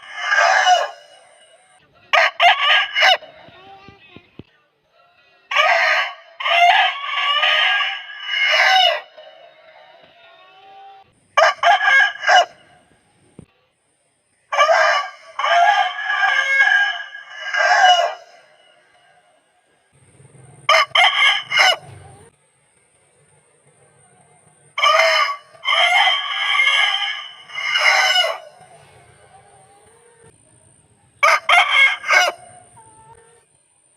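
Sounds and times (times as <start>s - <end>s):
rooster crowing: 0.0s - 3.4s, 5.0s - 9.9s, 11.4s - 12.7s, 14.5s - 19.2s, 20.7s - 22.0s, 24.8s - 29.0s, 31.2s - 32.6s.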